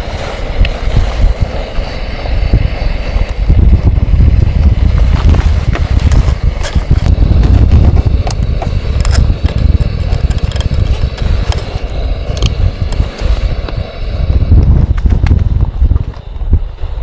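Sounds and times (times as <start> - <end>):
blizzard wind buffeting microphone: 0.0 - 17.0
scattered clicks: 5.7 - 13.8.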